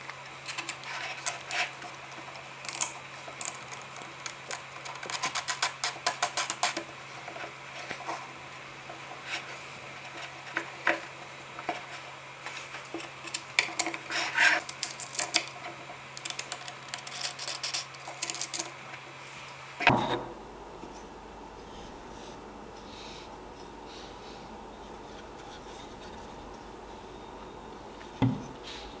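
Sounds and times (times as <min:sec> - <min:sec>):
wooden parts clicking and rubbing: 0:00.5 - 0:06.9, 0:13.3 - 0:18.8.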